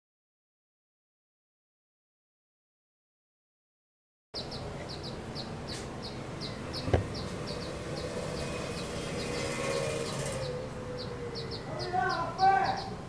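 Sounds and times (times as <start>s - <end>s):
steady background noise: 4.4s - 13.0s.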